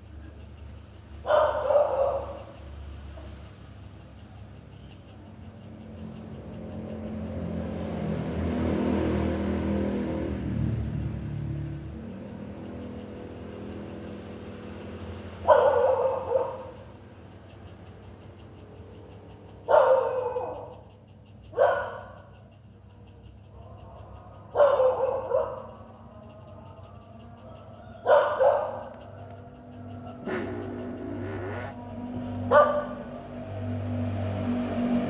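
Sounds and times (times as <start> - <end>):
dog barking: 1.2 - 2.6, 15.4 - 16.9, 19.6 - 20.9, 21.5 - 22.4, 23.5 - 31.1, 32.4 - 33.2
low humming rumble: 28.9 - 35.0.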